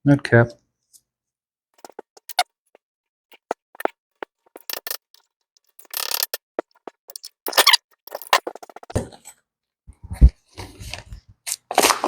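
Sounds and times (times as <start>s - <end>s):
scraping rattle: 4.5s - 8.9s.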